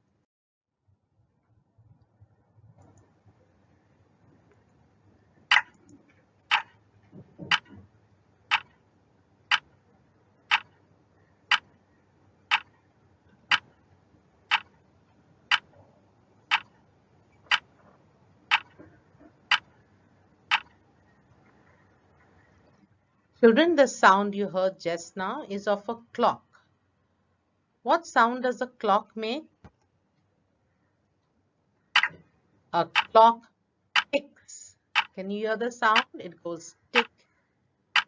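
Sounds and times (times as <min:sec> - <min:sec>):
clock ticking: 0:05.5 - 0:06.8, 0:07.4 - 0:07.8, 0:08.5 - 0:08.8, 0:09.5 - 0:09.7, 0:10.5 - 0:10.8, 0:11.5 - 0:11.8, 0:12.5 - 0:12.7, 0:13.4 - 0:13.8, 0:14.5 - 0:14.7, 0:15.5 - 0:15.8, 0:16.5 - 0:16.8, 0:17.5 - 0:17.7, 0:18.5 - 0:18.9, 0:19.5 - 0:19.8, 0:20.5 - 0:20.7, 0:32.0 - 0:32.2, 0:32.8 - 0:33.2, 0:34.0 - 0:34.2, 0:35.0 - 0:35.2, 0:35.9 - 0:36.2.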